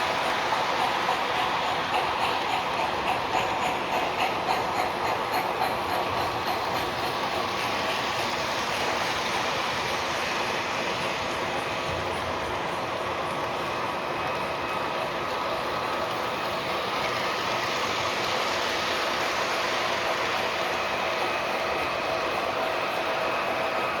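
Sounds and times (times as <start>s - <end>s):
model train wheels rolling: 0.0s - 24.0s.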